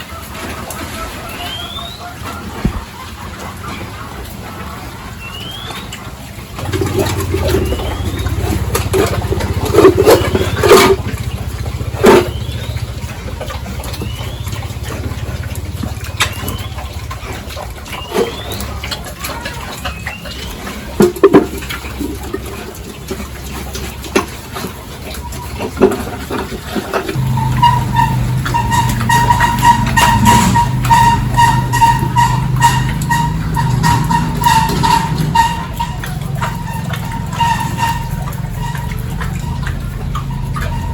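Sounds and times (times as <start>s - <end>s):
small engine running: 6.6s - 19.2s, 27.0s - 40.9s
machine humming: 27.2s - 40.9s.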